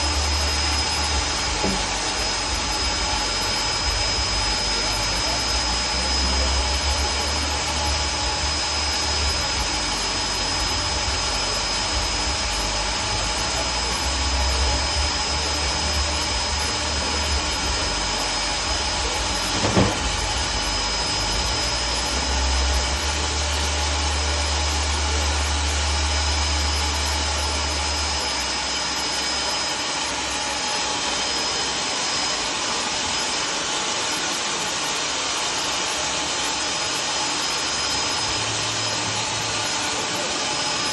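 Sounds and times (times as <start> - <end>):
sawmill running with high whine: 0.0 - 40.9
sharp knock: 19.6 - 20.1.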